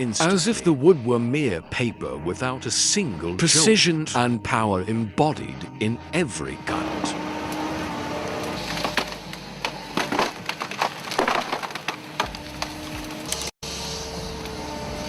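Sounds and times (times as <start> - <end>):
wood cracking and splintering: 7.5 - 13.5
machine mechanical hum: 11.9 - 15.0.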